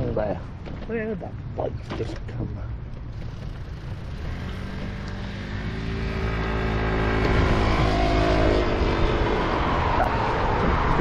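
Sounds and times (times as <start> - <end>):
low road rumble: 0.0 - 11.0
vehicle engine passing by: 3.2 - 11.0.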